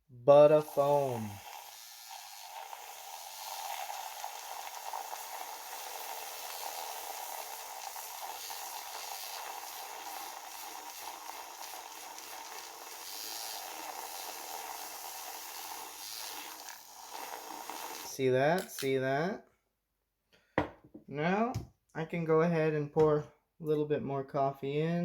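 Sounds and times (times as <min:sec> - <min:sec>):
handheld electric mixer whirring: 0:00.5 - 0:18.9.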